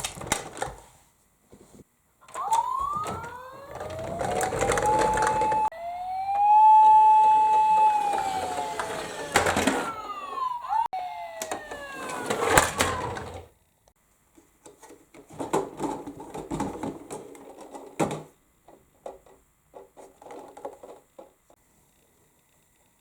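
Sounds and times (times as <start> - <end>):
toy electronic siren: 2.2 - 13.4
plastic clicks and rattles: 14.6 - 21.4.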